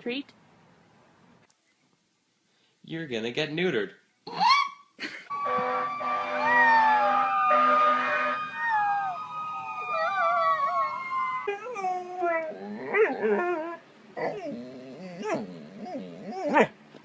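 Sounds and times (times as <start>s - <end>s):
dog whining cries: 4.3s - 4.9s, 8.6s - 16.7s
dog howling: 6.4s - 7.7s, 8.6s - 16.7s.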